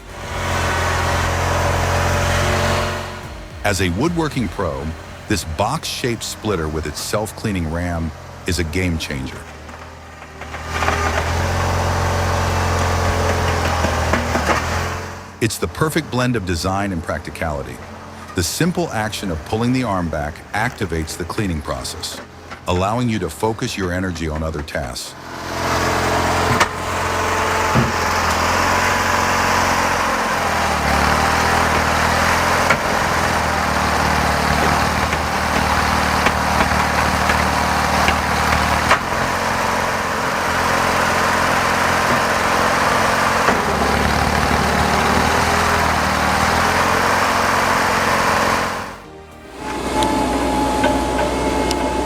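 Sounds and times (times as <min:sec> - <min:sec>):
machine knocking wood: 0:00.0 - 0:08.3, 0:09.6 - 0:15.1, 0:25.2 - 0:52.0
log splitter motor running: 0:00.0 - 0:23.3, 0:24.0 - 0:52.0.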